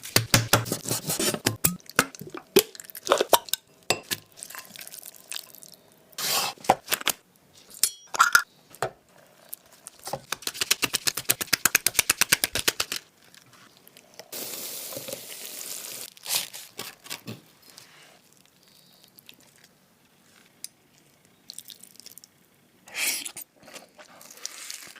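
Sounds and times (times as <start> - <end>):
utensils and dishes clinking: 7.7 - 8.5.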